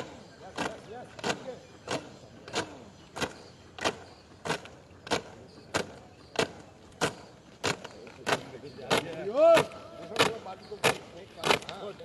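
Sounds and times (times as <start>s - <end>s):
soldiers drilling strikes: 0.0s - 11.9s.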